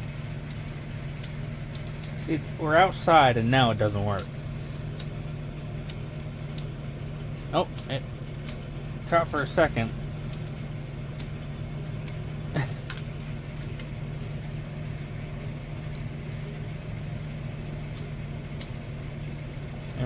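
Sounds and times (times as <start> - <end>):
car engine idling: 0.0 - 20.0
sharp clicks: 1.2 - 2.2, 5.8 - 7.1, 7.7 - 8.6, 10.3 - 11.3.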